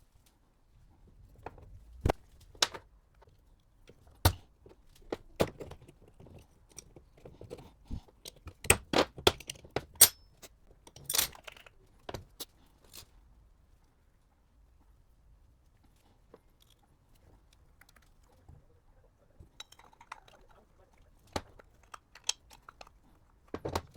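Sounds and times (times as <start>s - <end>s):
metal tools clinking: 10.0s - 11.7s.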